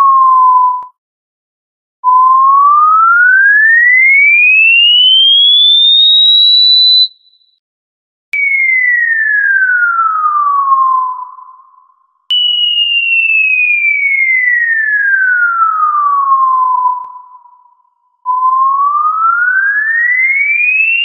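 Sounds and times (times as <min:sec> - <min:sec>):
falling whistle: 0:00.0 - 0:01.0, 0:02.0 - 0:07.6, 0:08.4 - 0:21.0
rising whistle tone: 0:00.0 - 0:01.0, 0:02.0 - 0:07.4, 0:08.4 - 0:21.0
click: 0:17.0 - 0:17.2.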